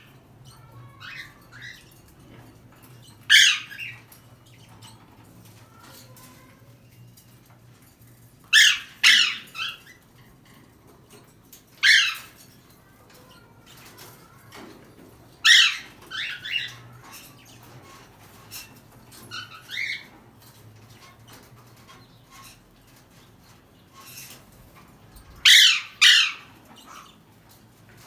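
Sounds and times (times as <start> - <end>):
parrot squawking: 3.2 - 4.0, 8.5 - 9.9, 11.8 - 12.3, 15.4 - 16.8, 25.4 - 27.2.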